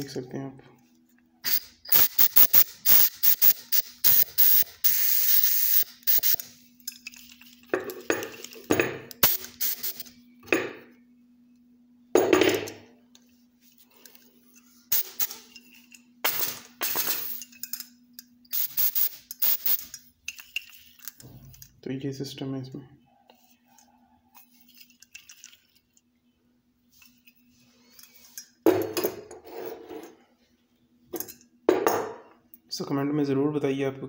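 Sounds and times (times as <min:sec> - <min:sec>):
metal clicks and clinks: 0:15.5 - 0:18.3.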